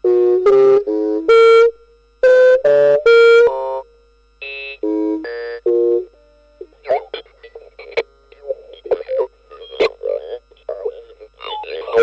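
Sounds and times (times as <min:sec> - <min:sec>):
short buzzy electronic tones: 0:00.0 - 0:06.4.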